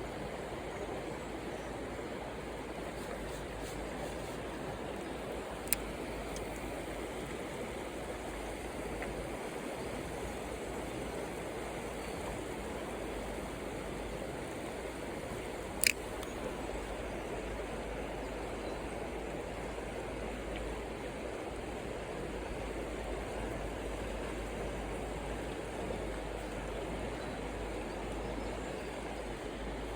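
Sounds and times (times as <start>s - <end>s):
stream water rushing: 0.0s - 29.9s
sharp clicks: 5.6s - 6.5s, 15.8s - 16.4s.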